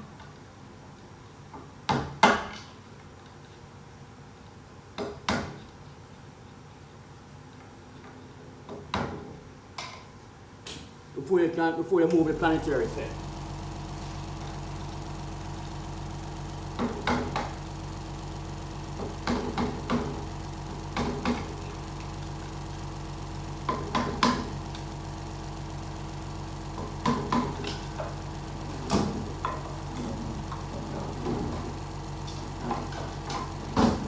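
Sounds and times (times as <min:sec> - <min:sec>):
steady background hum: 0:10.6 - 0:34.0.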